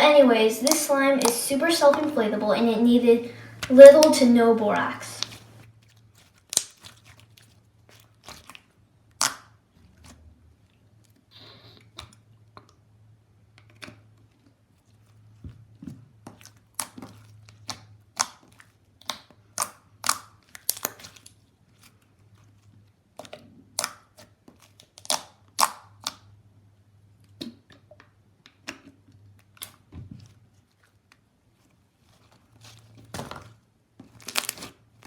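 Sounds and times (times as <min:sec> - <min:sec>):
slime clicking and popping: 0:09.2 - 0:09.5, 0:19.0 - 0:21.2.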